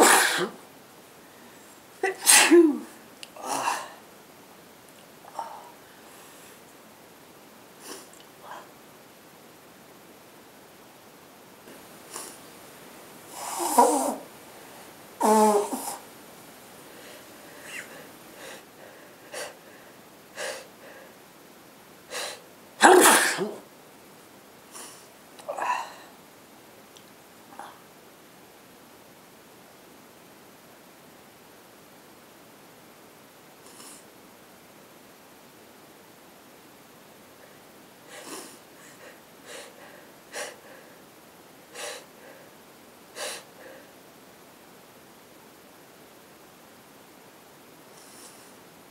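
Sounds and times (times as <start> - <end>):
person sneezing loudly: 0.0 - 0.6, 2.0 - 4.0, 22.1 - 23.6.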